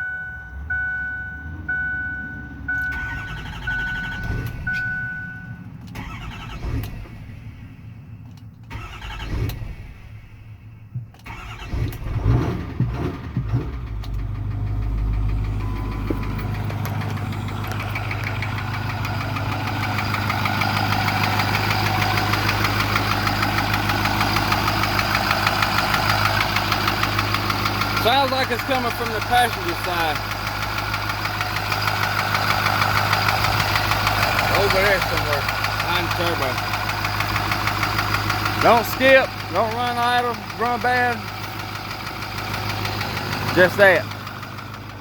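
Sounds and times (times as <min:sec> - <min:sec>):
steady chime tone: 0:00.0 - 0:05.6
diesel engine cranking and idling: 0:00.0 - 0:45.0
clicks: 0:08.2 - 0:08.8, 0:15.9 - 0:20.1
rhythmic engine knock: 0:14.7 - 0:45.0.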